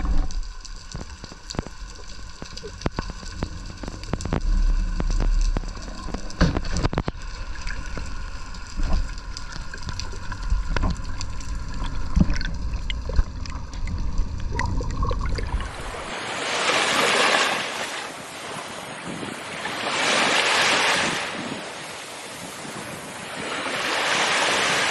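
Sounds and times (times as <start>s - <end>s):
low rumble: 0.0s - 16.1s
sea waves washing in: 0.0s - 24.9s.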